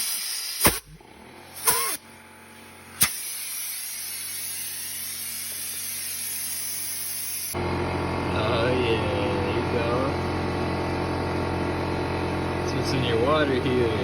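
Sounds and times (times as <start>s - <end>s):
valve click: 0.0s - 1.0s, 1.6s - 2.0s, 3.0s - 7.6s.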